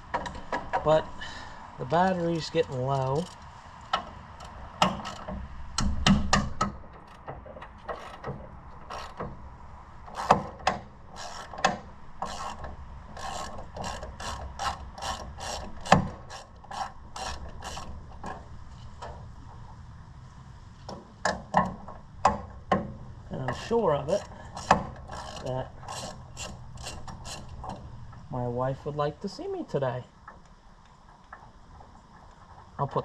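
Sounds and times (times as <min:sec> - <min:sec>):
ratchet wrench clicking: 0:02.3 - 0:03.5, 0:04.4 - 0:06.4, 0:07.9 - 0:09.2, 0:10.1 - 0:18.3, 0:23.4 - 0:27.8
metal knocks: 0:02.4 - 0:09.4.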